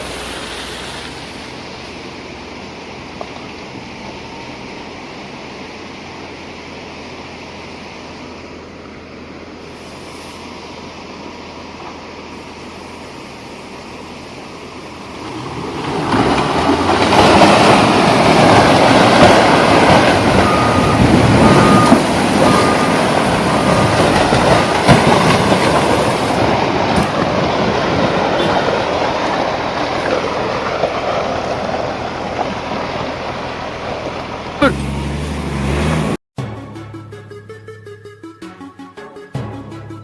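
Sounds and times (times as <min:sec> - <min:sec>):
heavy vehicle passing: 0:14.9 - 0:38.0.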